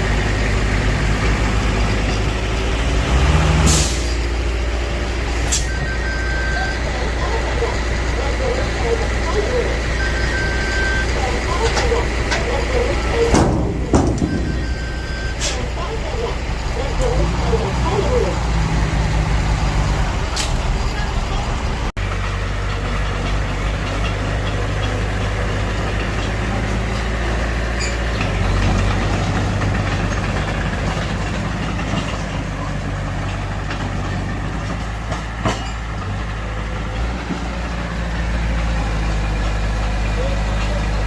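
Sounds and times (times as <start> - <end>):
bulldozer diesel engine running: 0.0 - 41.0.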